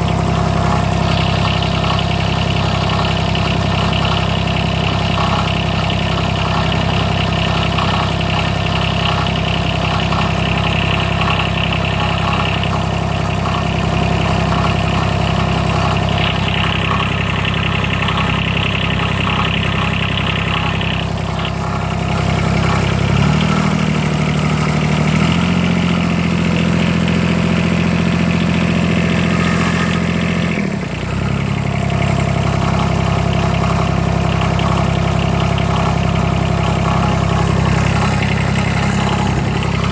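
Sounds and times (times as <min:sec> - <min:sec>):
diesel engine idling and revving: 0:00.0 - 0:39.9
rattling grinding noise: 0:00.0 - 0:39.9.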